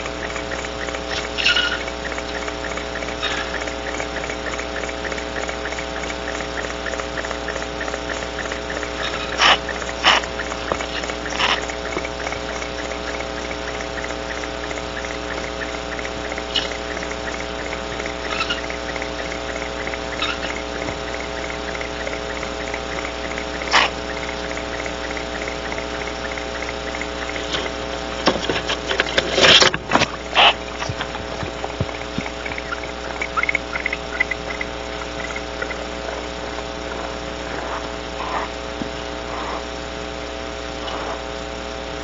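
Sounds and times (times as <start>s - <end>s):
sharp scratches or clicks: 0.0s - 36.6s
crickets chirping: 0.0s - 42.0s
steady electrical hum: 0.0s - 42.0s.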